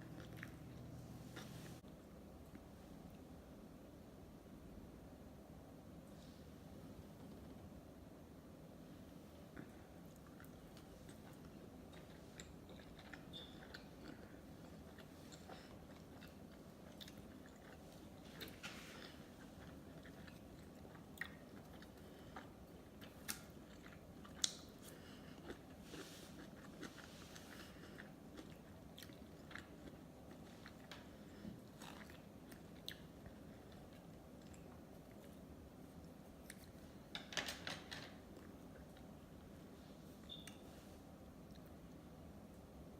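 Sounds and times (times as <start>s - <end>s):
person chewing food: 0.0s - 2.6s, 9.4s - 37.1s.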